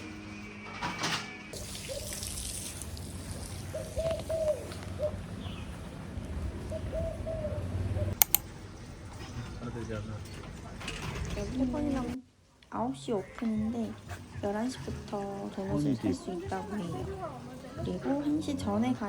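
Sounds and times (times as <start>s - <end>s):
running water: 1.6s - 4.0s
bird cooing: 1.8s - 2.3s, 3.6s - 5.8s, 6.4s - 8.2s
sharp clicks: 8.2s - 8.5s.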